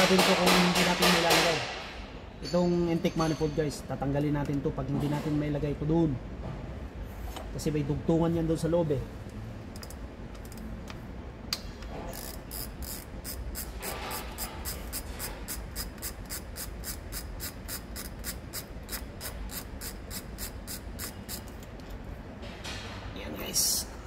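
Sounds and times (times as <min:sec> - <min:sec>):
ratchet wrench clicking: 0:09.7 - 0:10.7, 0:12.1 - 0:21.9.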